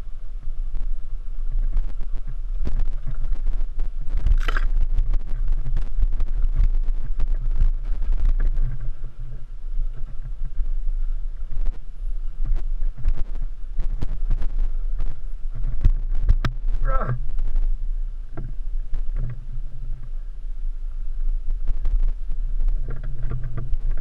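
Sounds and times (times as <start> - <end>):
motorcycle engine rumble: 0.0 - 24.0
wind buffeting microphone: 0.0 - 24.0
knocks and rattles from bike: 1.6 - 10.7, 11.5 - 17.7, 21.6 - 24.0.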